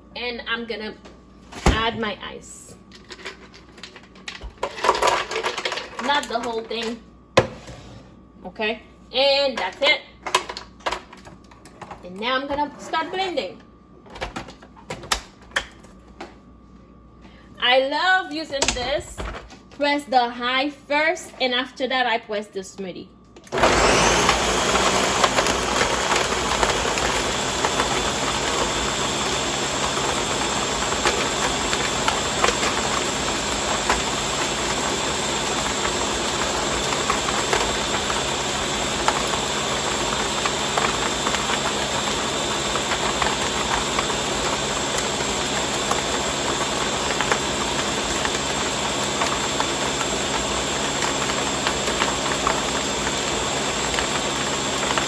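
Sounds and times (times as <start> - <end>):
blender motor running: 23.5 - 55.0.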